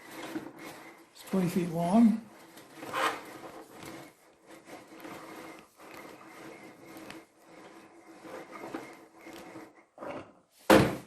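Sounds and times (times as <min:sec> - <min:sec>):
vacuum cord rewinding: 0:00.0 - 0:10.5.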